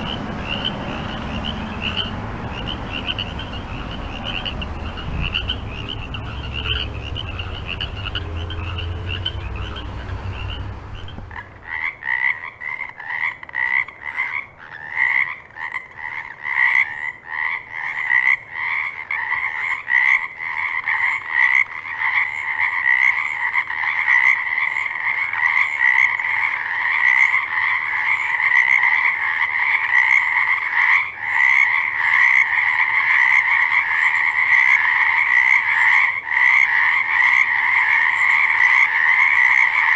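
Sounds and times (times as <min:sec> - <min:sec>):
low rumble: 0:00.0 - 0:11.7
frogs calling: 0:00.0 - 0:39.9.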